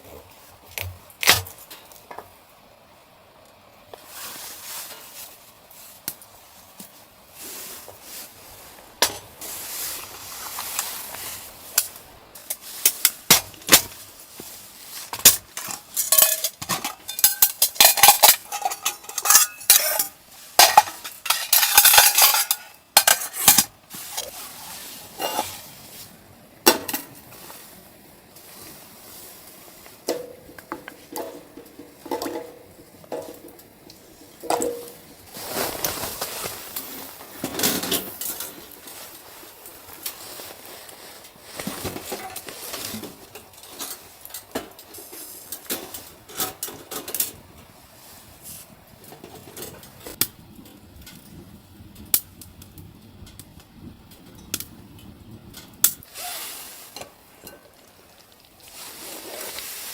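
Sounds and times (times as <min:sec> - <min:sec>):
clinks knocks and scrapes of handling: 0:09.0 - 0:25.7, 0:30.0 - 0:38.9.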